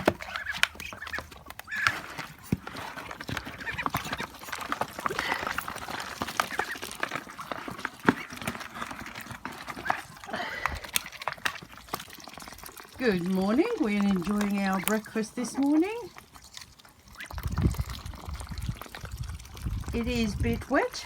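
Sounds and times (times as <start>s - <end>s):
poultry calls: 0.0s - 11.3s
poultry pecking at feed: 0.0s - 20.1s.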